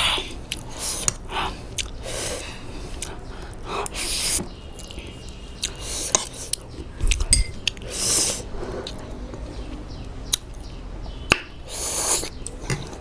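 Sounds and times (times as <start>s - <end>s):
lip smacks and mouth clicks: 0.5s - 2.0s, 5.6s - 7.9s.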